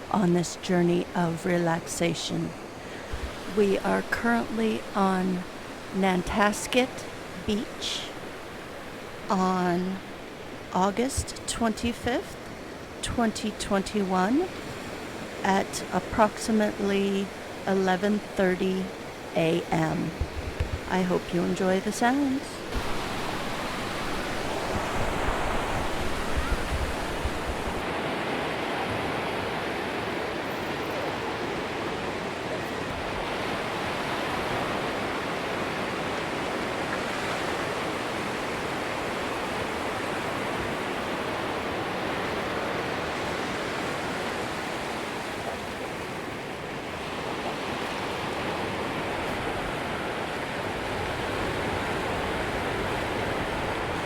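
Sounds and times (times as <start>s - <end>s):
surf washing onto beach: 22.2s - 54.0s.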